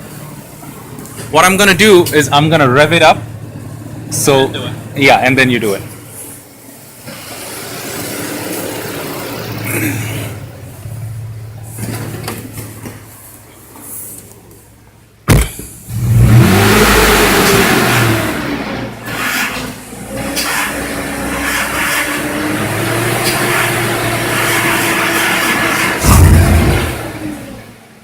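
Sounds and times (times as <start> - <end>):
sharp knock: 15.3 - 15.7
loud thump: 15.3 - 15.8, 26.0 - 27.2
car engine revving: 15.3 - 27.8.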